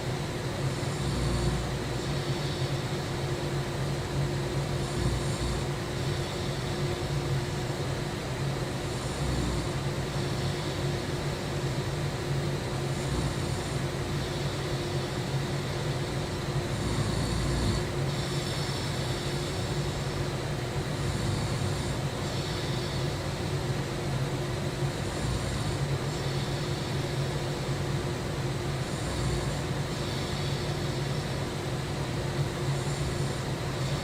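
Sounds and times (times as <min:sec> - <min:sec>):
steady low hum: 0:00.0 - 0:34.0
person snoring: 0:00.7 - 0:02.9, 0:04.7 - 0:06.7, 0:08.8 - 0:11.0, 0:12.9 - 0:14.6, 0:16.7 - 0:20.0, 0:20.9 - 0:23.2, 0:25.0 - 0:26.8, 0:28.8 - 0:30.9, 0:32.6 - 0:34.0.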